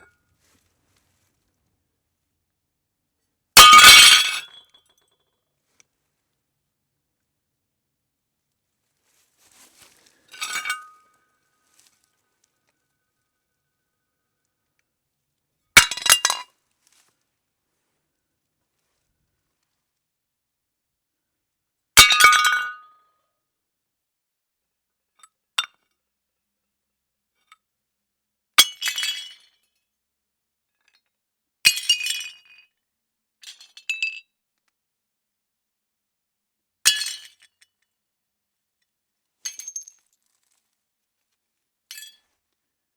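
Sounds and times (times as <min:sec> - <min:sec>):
plates smashing: 0:03.6 - 0:04.5.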